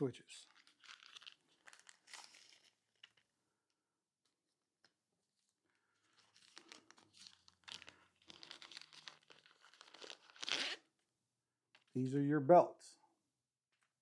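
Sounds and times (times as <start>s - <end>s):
plastic packaging crinkling: 0.4s - 3.2s, 6.1s - 10.8s.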